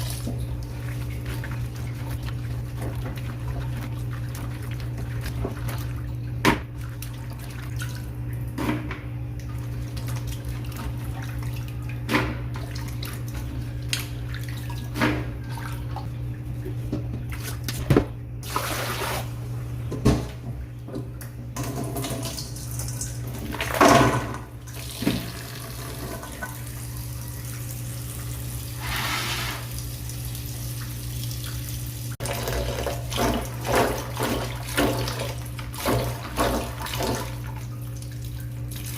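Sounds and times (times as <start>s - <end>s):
water running from a tap: 0.0s - 8.6s, 21.6s - 38.9s.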